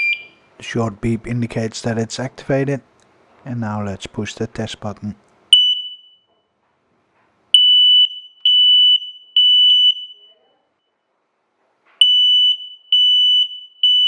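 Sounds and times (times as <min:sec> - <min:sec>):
smoke alarm beeping: 0:00.0 - 0:00.4, 0:05.5 - 0:06.3, 0:07.6 - 0:10.4, 0:12.0 - 0:14.0.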